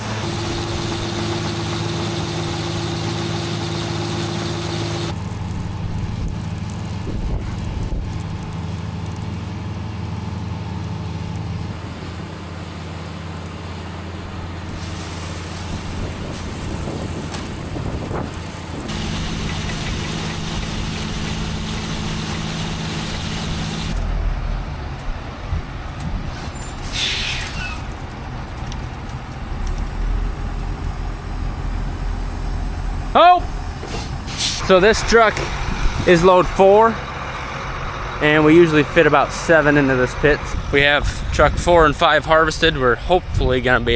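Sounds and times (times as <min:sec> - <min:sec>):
truck engine running: 0:00.0 - 0:43.9
air hiss: 0:26.8 - 0:27.9.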